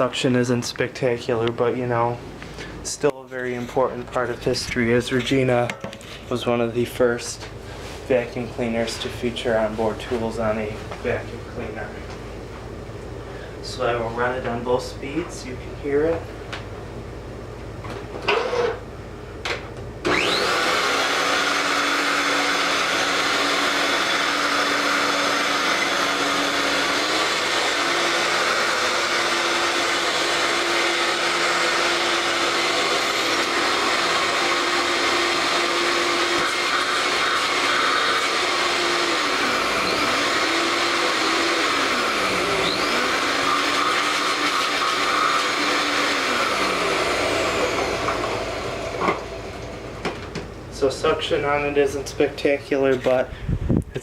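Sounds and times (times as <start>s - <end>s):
vacuum cleaner motor whine: 18.2s - 18.8s, 20.0s - 50.2s.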